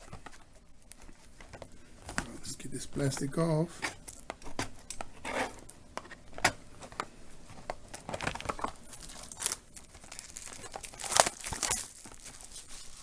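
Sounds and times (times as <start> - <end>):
plastic shrink-wrap tearing: 7.9 - 13.0.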